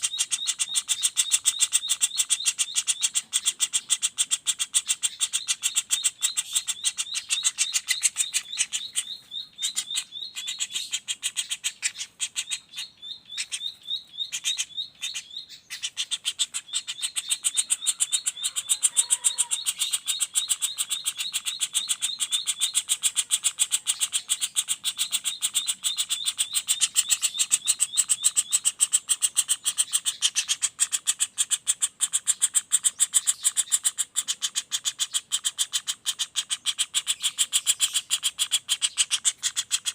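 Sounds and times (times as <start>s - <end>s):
woodpecker rattling call: 0.0s - 39.9s.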